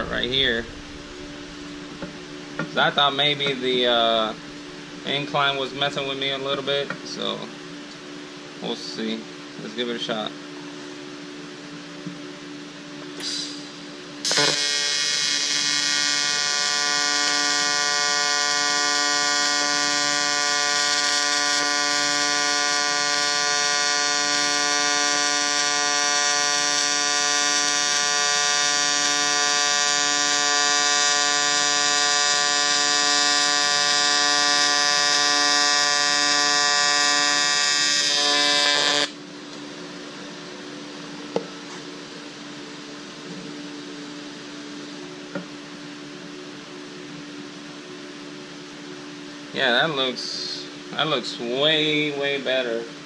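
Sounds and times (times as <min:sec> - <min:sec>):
welding arc buzzing: 0:00.0 - 0:06.1, 0:13.3 - 0:39.2.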